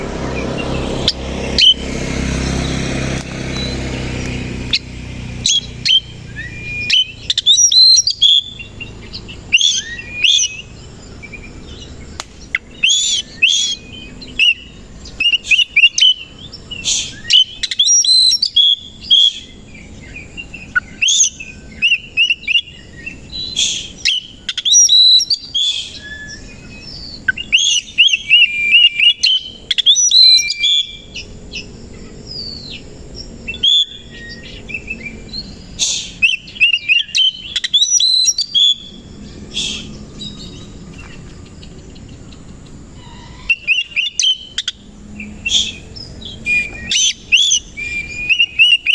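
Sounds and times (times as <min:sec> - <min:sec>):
low rumbling noise: 0:00.0 - 0:07.5, 0:38.4 - 0:48.9
bird whistling and chirping: 0:00.0 - 0:48.9.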